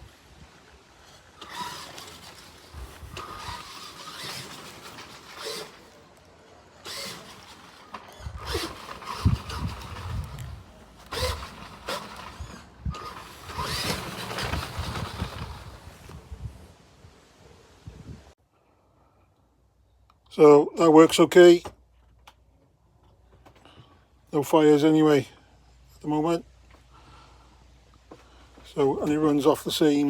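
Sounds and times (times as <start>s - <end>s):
gear and drivetrain noise: 0.0s - 16.7s
electric motors whining: 1.3s - 16.2s.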